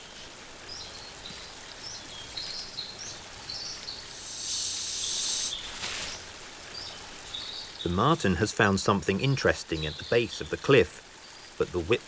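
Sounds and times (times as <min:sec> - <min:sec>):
bird chirping: 0:00.7 - 0:08.3, 0:09.7 - 0:11.9
sharp hiss: 0:04.0 - 0:06.3.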